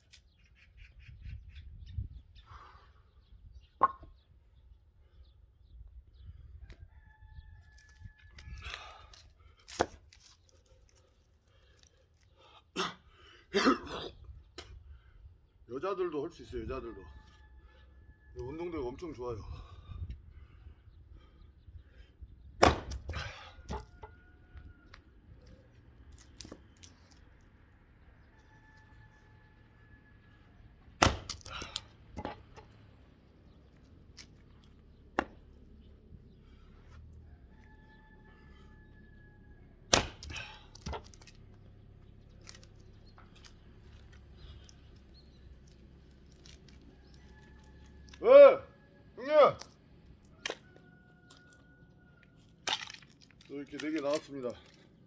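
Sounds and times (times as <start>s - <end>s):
axe chopping logs: 3.8s - 4.2s, 8.4s - 10.4s, 22.5s - 24.2s, 26.1s - 27.2s, 30.8s - 32.8s, 33.7s - 35.8s, 39.9s - 41.7s, 50.3s - 50.8s.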